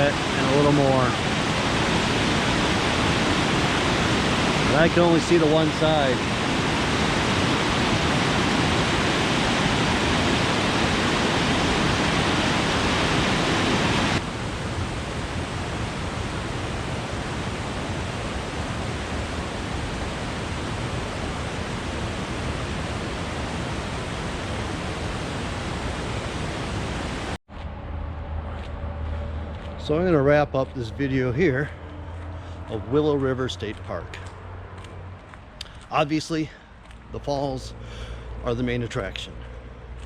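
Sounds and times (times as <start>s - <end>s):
waterfall rushing: 0.0s - 27.4s.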